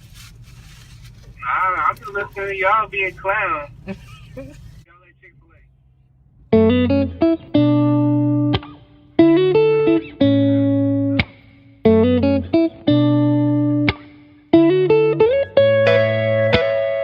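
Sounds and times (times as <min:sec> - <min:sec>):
background music riff and chord: 0:06.5 - 0:17.0.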